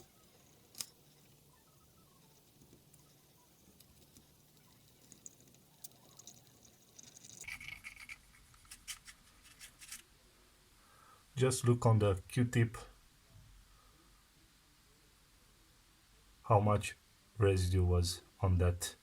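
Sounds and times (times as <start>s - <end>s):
cotton swab rubbing circuit board: 0.0s - 10.0s
small clicks: 0.0s - 10.0s.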